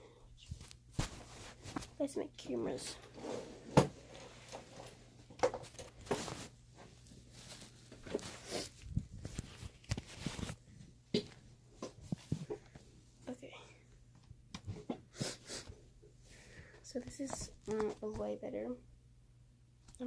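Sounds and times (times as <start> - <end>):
objects knocking and rustling: 3.6 - 12.9.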